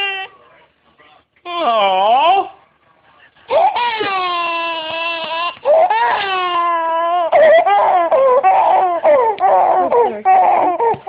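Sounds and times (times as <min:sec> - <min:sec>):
baby crying: 0:03.5 - 0:11.0.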